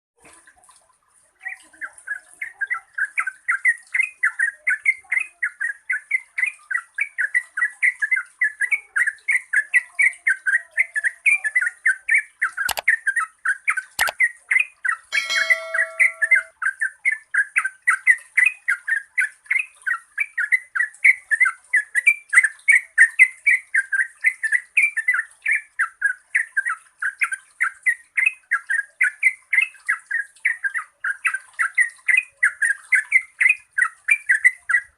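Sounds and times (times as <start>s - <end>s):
sharp clicks: 12.7s - 12.9s
brief pitched tone: 15.2s - 16.5s.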